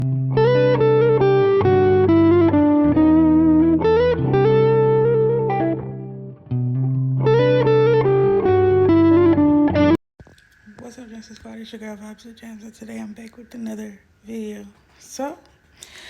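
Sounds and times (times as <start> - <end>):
guitar intro music: 0.0 - 10.0.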